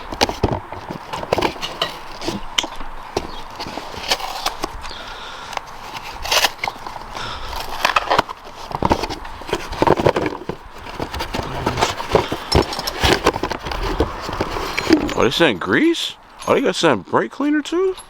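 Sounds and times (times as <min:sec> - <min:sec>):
items knocking and clattering: 0:00.0 - 0:04.7, 0:07.6 - 0:15.6
cardboard scraping: 0:05.8 - 0:15.4.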